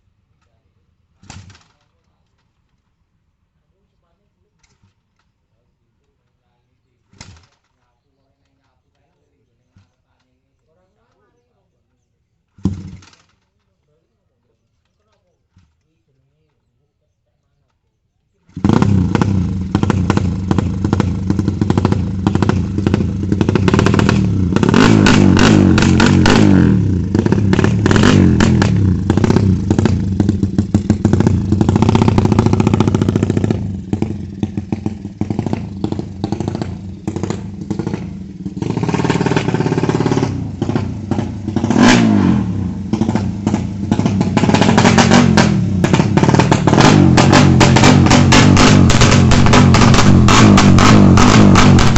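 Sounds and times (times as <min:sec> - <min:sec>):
exhaust crackling: 0:18.4 - 0:51.9
motorbike engine revving: 0:18.5 - 0:51.9.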